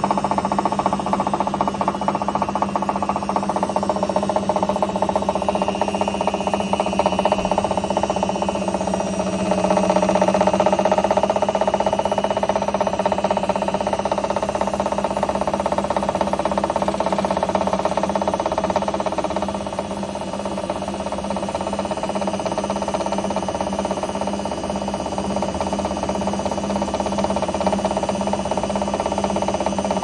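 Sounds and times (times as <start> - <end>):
washing machine spinning: 0.0 - 30.0.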